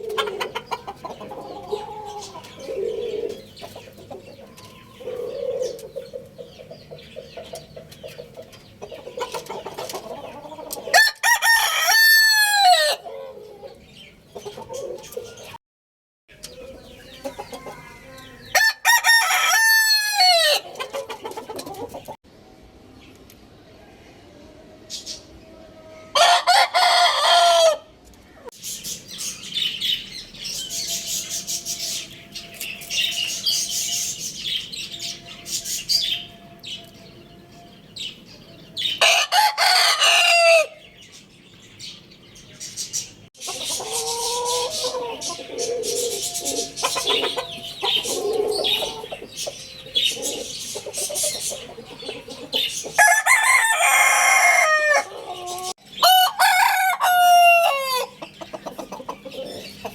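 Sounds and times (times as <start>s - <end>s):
roosters crowing: 0.0s - 7.2s, 9.0s - 14.0s, 16.5s - 22.2s, 23.8s - 28.0s, 29.1s - 41.2s, 43.4s - 59.9s
small birds chirping: 0.0s - 10.9s, 13.0s - 15.6s, 16.3s - 18.6s, 28.3s - 39.0s, 40.7s - 56.2s, 57.6s - 59.9s
chickens clucking: 0.0s - 15.6s, 16.3s - 22.2s, 24.5s - 59.9s.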